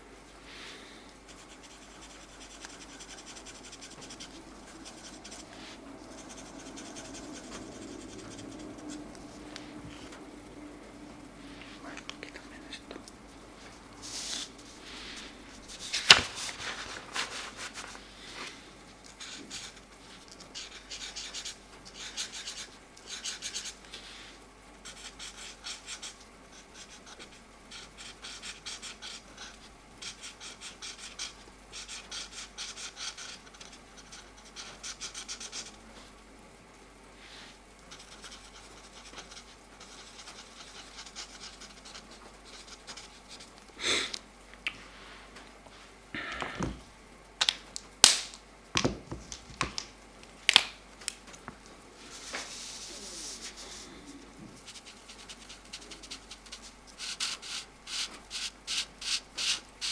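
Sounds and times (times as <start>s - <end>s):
markers scribbling on paper: 1.3s - 10.7s, 14.0s - 18.0s, 19.1s - 24.0s, 24.8s - 35.8s, 37.9s - 43.6s, 54.6s - 59.9s.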